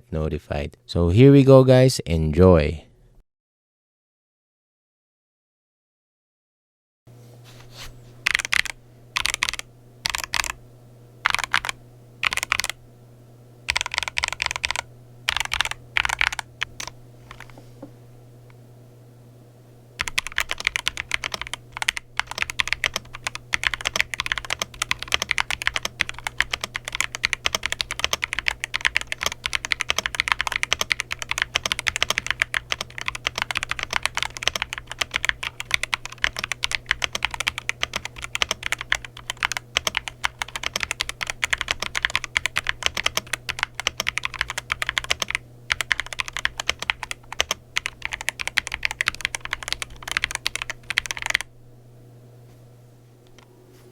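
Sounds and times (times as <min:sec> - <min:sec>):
fast mechanical keyboard typing: 0:08.2 - 0:10.6, 0:11.2 - 0:12.8, 0:13.7 - 0:17.5, 0:20.0 - 0:51.5.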